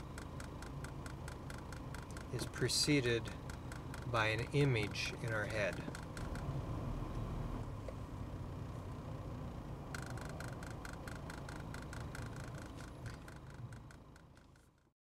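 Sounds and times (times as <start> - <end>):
rapid light clicks: 0.0 - 6.5, 9.9 - 14.9
low steady hum: 0.0 - 14.9.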